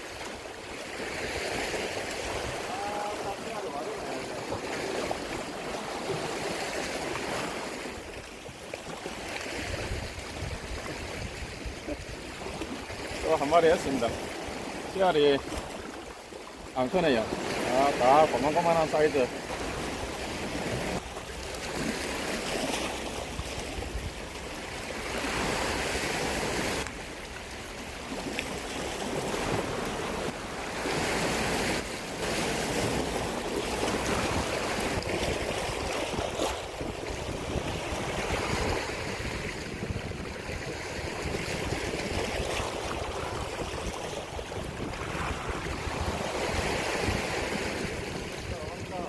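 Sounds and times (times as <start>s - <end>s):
sea waves washing on shore: 0.0s - 49.0s
wind buffeting microphone: 9.6s - 13.0s, 32.4s - 49.0s.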